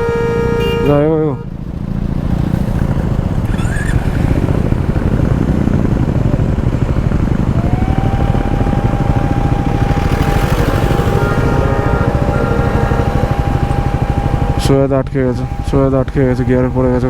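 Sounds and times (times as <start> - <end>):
motorcycle engine running: 0.0 - 17.0
steady high tone: 7.6 - 17.0.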